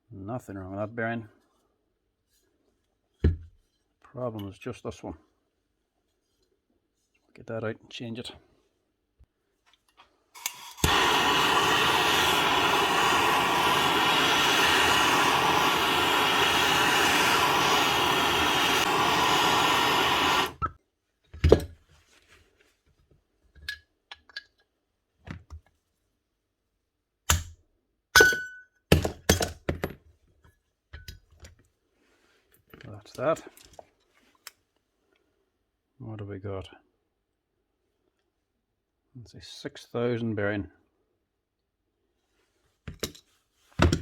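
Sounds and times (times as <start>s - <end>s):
blowtorch hissing: 10.4s - 20.6s.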